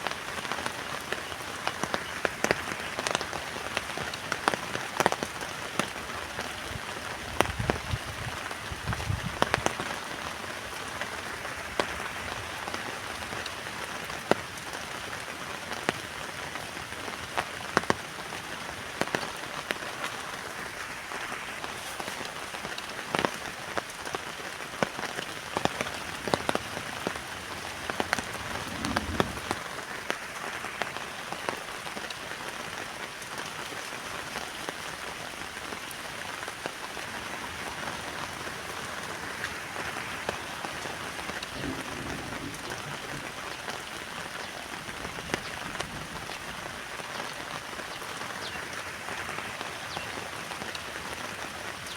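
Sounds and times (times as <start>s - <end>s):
heavy rain on a tent: 0.0s - 51.9s
low rumbles: 28.2s - 29.7s.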